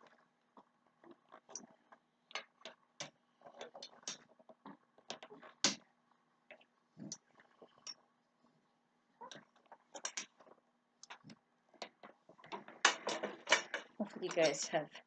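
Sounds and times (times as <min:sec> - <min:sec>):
frame tubes clicking and knocking: 0:02.3 - 0:05.9, 0:09.2 - 0:15.0.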